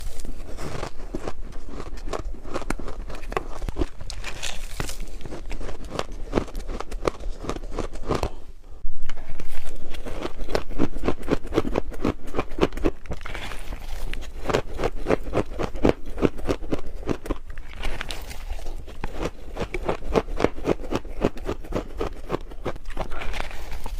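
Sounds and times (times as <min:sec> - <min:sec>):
ice being chewed: 0:00.0 - 0:08.4, 0:09.5 - 0:23.9.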